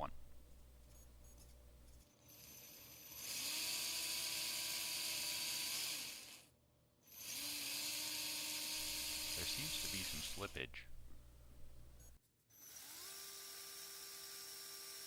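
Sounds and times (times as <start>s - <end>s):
electric motor whine: 7.2s - 10.6s.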